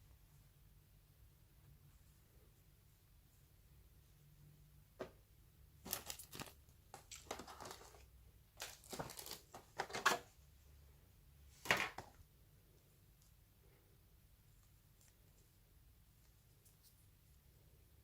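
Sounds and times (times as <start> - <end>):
packaging rustling and crinkling: 5.9 - 8.0, 8.6 - 10.3.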